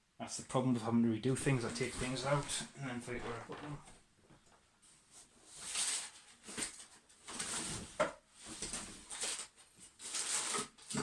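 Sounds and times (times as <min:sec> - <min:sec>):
rustling of bags: 0:05.4 - 0:11.0.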